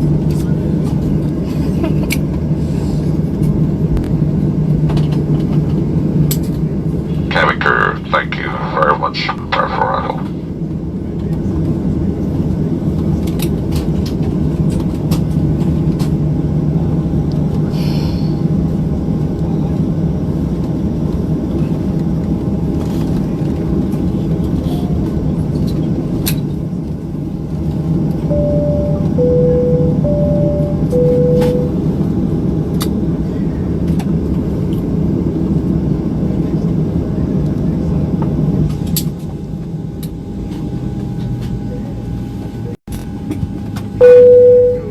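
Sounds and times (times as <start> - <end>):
airliner cabin engine rumble: 0.0 - 44.9
two-note high-low chime: 28.3 - 31.8, 44.0 - 44.9.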